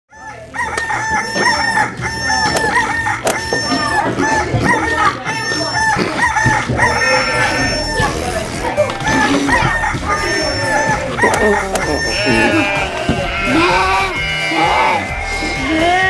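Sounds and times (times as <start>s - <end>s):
fowl clucking: 0.1s - 16.0s.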